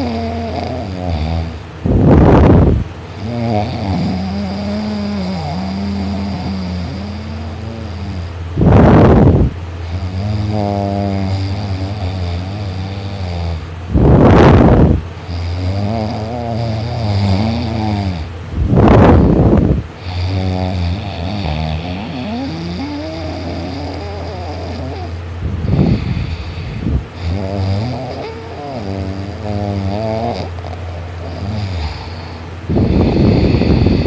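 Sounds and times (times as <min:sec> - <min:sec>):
man snoring heavily: 0:00.0 - 0:34.0
heavy breathing: 0:18.2 - 0:28.8, 0:30.4 - 0:34.0.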